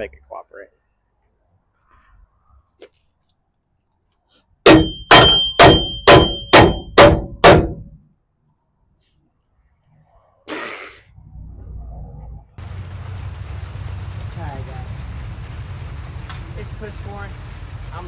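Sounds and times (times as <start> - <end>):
hammer striking metal: 4.7 - 8.0.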